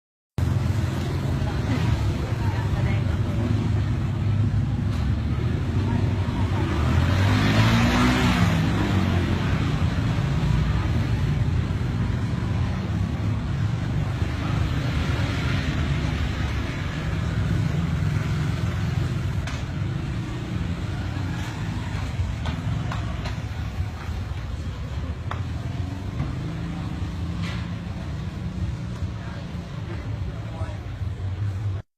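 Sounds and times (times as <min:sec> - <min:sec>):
traffic rumble: 0:00.4 - 0:31.8
vehicle passing close by: 0:06.2 - 0:10.9.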